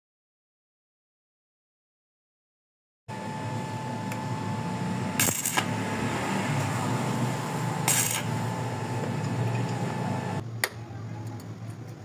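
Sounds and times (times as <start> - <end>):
steady hum: 3.1 - 12.0
sharp bright bursts: 3.5 - 10.4.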